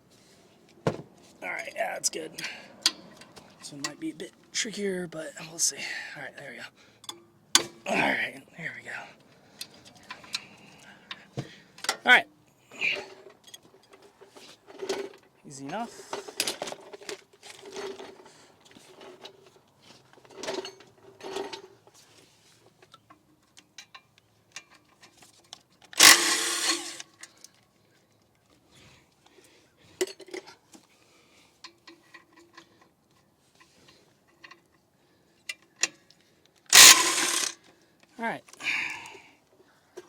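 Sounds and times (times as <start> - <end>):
metal scraping and clinks: 25.9 - 27.4, 36.7 - 37.7
loud harsh burst: 36.8 - 37.5.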